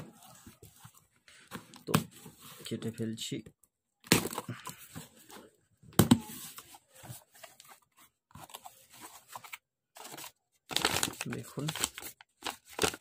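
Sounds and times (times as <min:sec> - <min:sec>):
packaging tearing and crinkling: 0:10.1 - 0:13.0.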